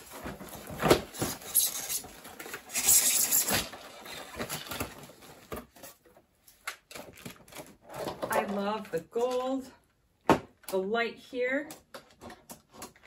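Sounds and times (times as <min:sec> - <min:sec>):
packaging rustling and crinkling: 0:00.0 - 0:08.6.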